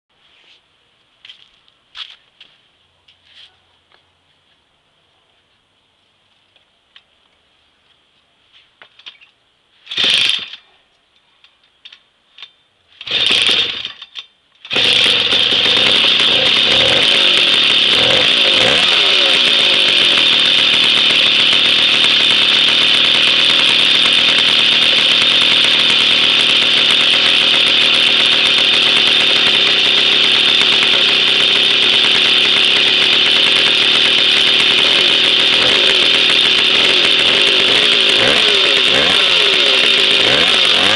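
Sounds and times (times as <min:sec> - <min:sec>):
moped engine starting and running: 0:09.8 - 0:10.7, 0:12.9 - 0:40.9.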